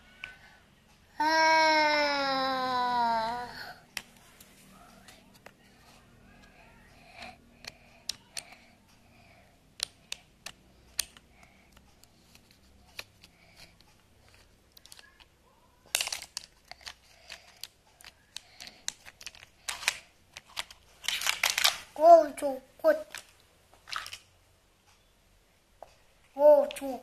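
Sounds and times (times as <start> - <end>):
plastic toy clicks and knocks: 9.8 - 21.9.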